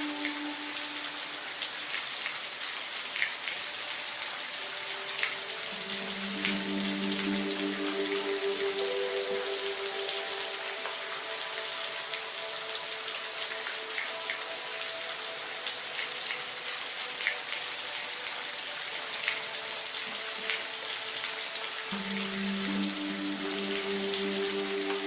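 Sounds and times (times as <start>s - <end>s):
raindrops ticking: 0.0s - 17.4s
rain hiss: 0.0s - 25.0s
soft background music: 0.0s - 25.0s.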